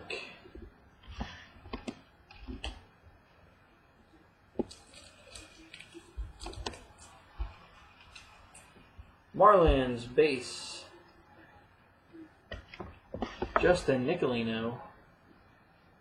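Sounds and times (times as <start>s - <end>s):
trading cards clicking and rustling: 4.6s - 8.8s.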